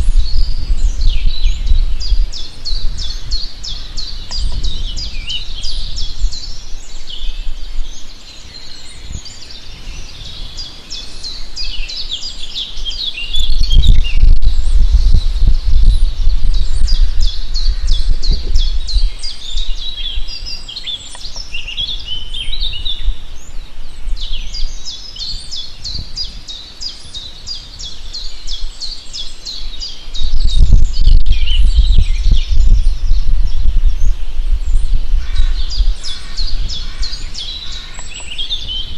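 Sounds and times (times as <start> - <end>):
deep low rumble: 0.0 - 6.5, 13.4 - 20.6, 30.2 - 37.8
songbirds chirping: 0.0 - 38.9.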